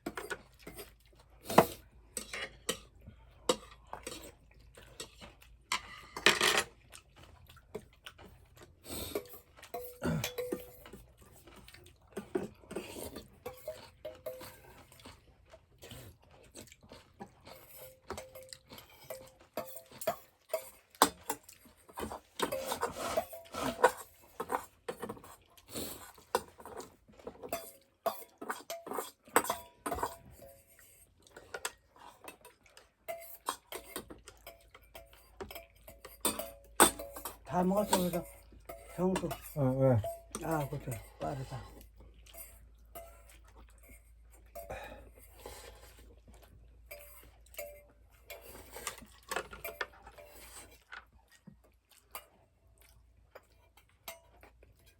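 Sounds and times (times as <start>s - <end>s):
cutlery clinking against dishes: 5.0s - 6.7s, 9.2s - 11.1s, 12.2s - 14.9s, 17.5s - 25.4s, 26.4s - 45.8s, 46.9s - 50.8s.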